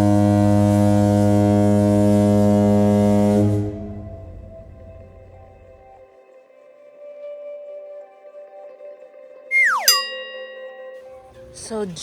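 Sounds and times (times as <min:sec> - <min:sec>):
deep horn-like tone: 0:00.0 - 0:05.8
soft ambient music: 0:02.8 - 0:12.0.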